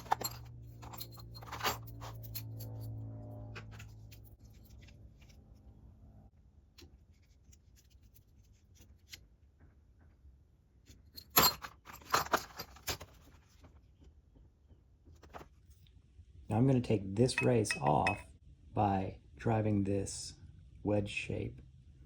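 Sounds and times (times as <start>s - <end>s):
metal tools clinking and rattling: 0.0s - 3.0s, 11.1s - 13.2s, 17.2s - 18.3s.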